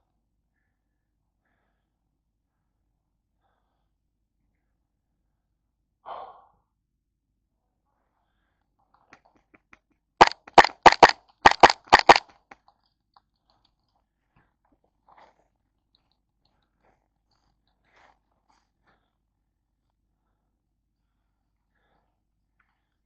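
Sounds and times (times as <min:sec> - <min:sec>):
airsoft gun shots: 0:10.2 - 0:12.3.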